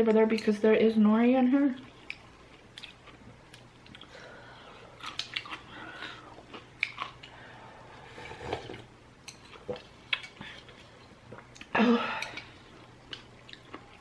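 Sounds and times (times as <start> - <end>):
chewing noodles: 8.2 - 14.0.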